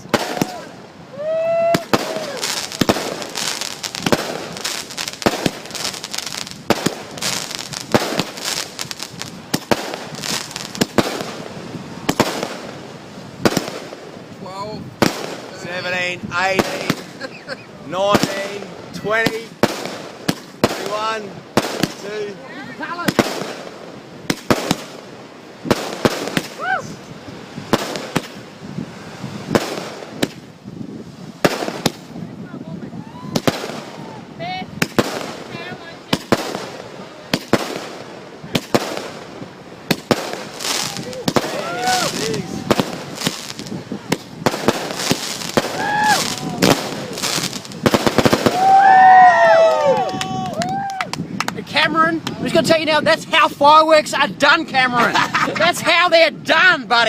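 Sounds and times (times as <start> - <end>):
fireworks bangs: 0.0 - 54.0
fireworks crackling: 0.0 - 57.0
firework whistle rising and falling: 45.6 - 47.5, 48.2 - 51.0.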